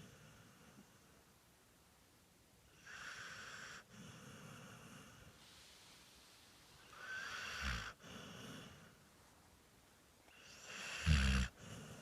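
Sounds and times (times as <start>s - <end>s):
person snoring: 10.6s - 12.0s.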